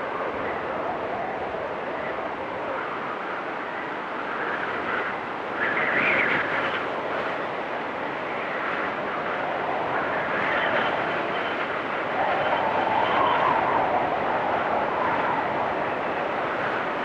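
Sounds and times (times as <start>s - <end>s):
rain: 0.0s - 17.0s
wind rushing: 9.2s - 17.0s.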